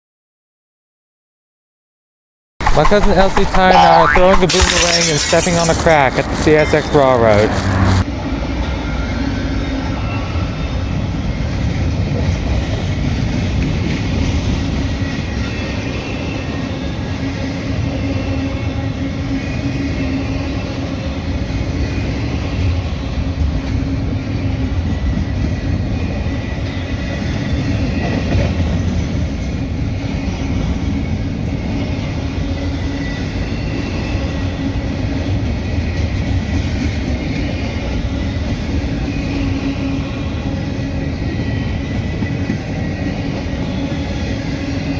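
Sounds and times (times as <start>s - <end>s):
steady hum: 2.6s - 8.0s.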